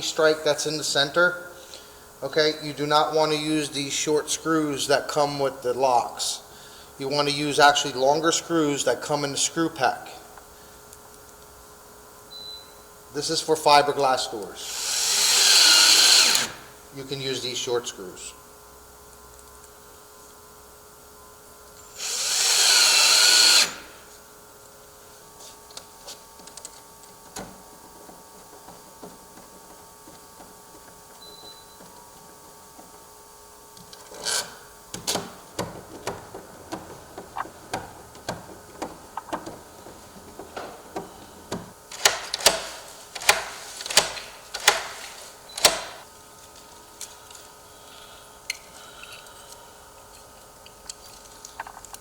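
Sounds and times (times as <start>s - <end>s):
cordless drill driving a screw: 14.6s - 16.7s, 21.8s - 24.0s
sharp clicks and knocks: 33.8s - 46.0s.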